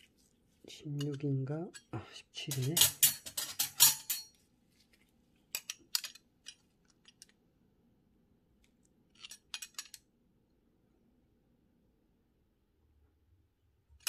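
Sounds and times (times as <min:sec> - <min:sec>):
metal tools clicking and clinking: 0:01.0 - 0:04.4, 0:05.5 - 0:07.3, 0:09.2 - 0:10.0.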